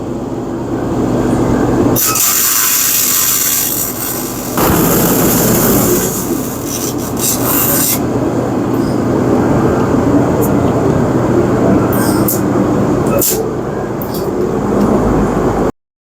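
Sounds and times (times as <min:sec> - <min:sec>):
metal hissing and scraping: 0:02.0 - 0:08.1.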